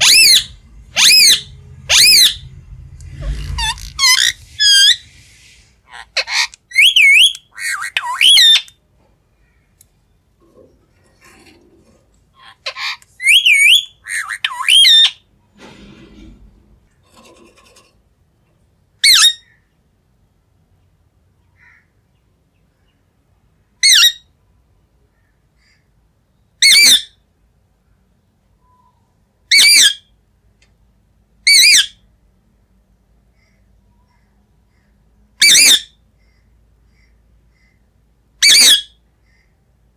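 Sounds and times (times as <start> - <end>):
parrot screeching: 0.0 - 2.5, 3.4 - 5.1, 5.9 - 8.7, 12.3 - 15.2, 26.6 - 27.1, 29.5 - 30.0, 31.5 - 32.0, 35.4 - 36.0, 38.4 - 39.0.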